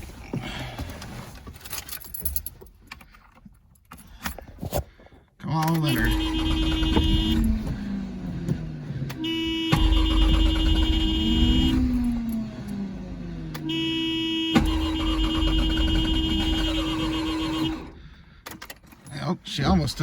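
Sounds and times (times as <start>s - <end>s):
engine cranking on starter: 5.8s - 13.7s, 14.5s - 19.0s.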